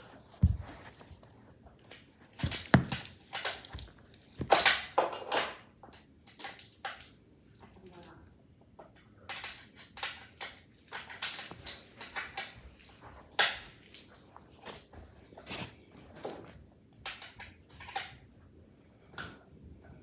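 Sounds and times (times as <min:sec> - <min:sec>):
clicks knocks and rustles of assembly: 0:02.3 - 0:05.4.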